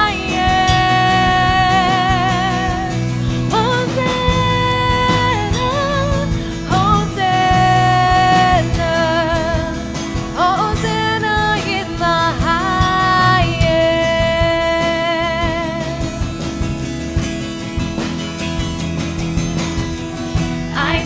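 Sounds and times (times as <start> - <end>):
person singing with vibrato: 0.0 - 16.2, 20.7 - 21.0
guitar: 0.0 - 21.0
steady beat: 0.0 - 21.0.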